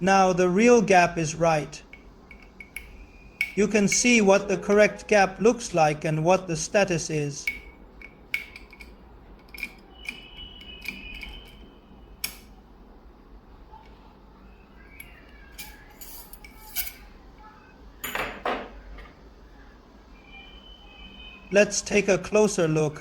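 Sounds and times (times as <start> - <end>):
metal clicks of lock tool: 1.9 - 4.1, 7.5 - 10.2, 10.8 - 11.6, 12.2 - 12.5.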